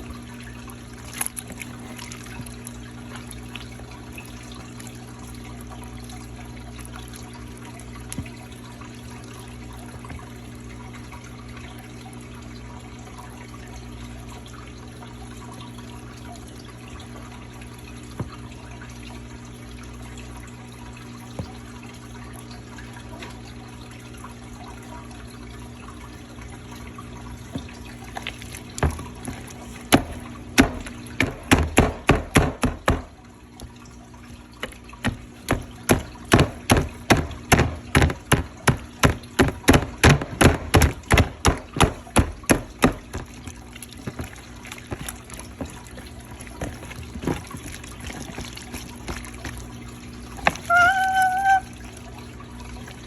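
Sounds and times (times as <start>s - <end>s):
slime squelching: 0.9s - 5.0s, 27.6s - 52.1s.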